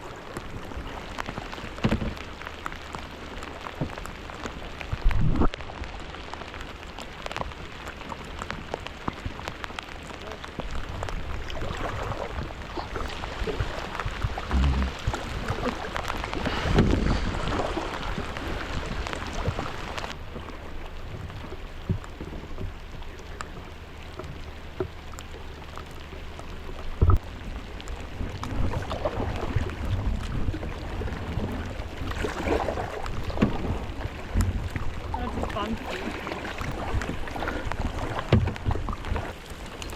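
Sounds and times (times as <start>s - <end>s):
water washing around boat: 0.0s - 39.9s
wind noise: 4.9s - 5.8s, 10.6s - 20.0s.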